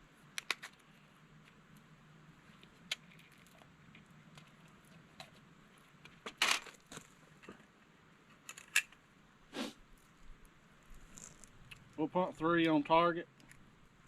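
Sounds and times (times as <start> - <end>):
small metal parts rustling: 10.9 - 11.8.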